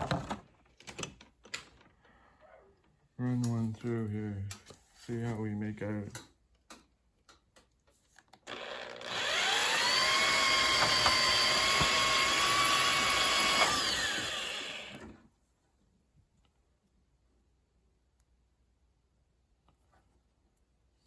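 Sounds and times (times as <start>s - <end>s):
wire stripper motor whining: 8.5s - 15.2s.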